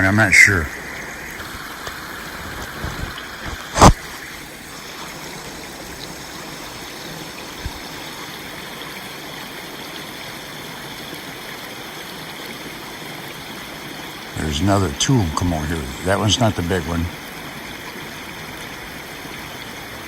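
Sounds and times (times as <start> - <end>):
water running through a dam: 0.0 - 20.0.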